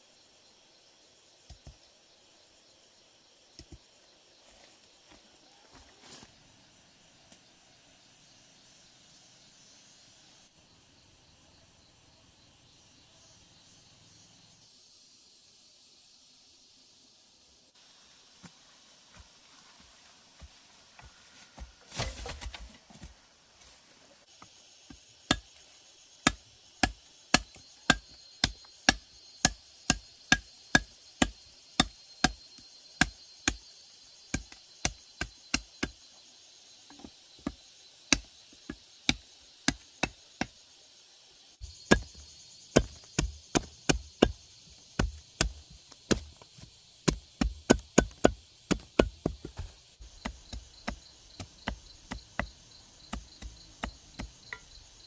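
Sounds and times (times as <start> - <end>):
insects droning: 0.0 - 55.0
chopping blows into wood: 41.8 - 44.4.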